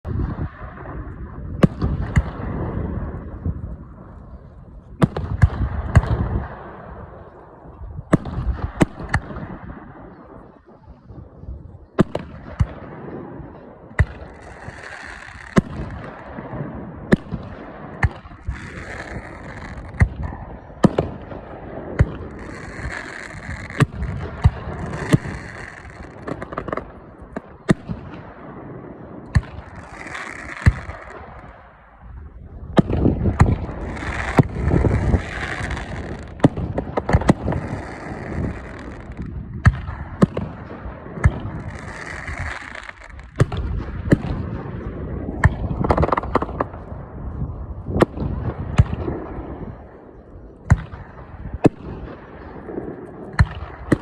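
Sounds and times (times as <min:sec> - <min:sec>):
fireworks bangs: 0:00.0 - 0:54.0
hissing crackle of fireworks: 0:12.0 - 0:54.0.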